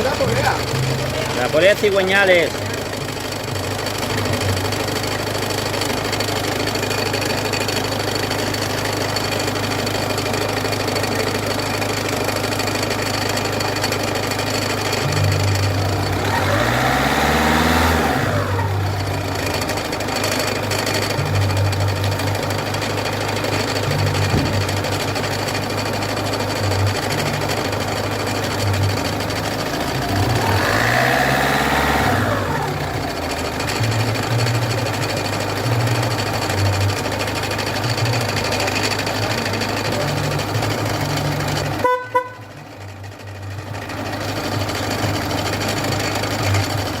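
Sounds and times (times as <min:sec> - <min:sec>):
diesel engine clattering: 0:00.0 - 0:47.0
short tone: 0:41.8 - 0:42.7.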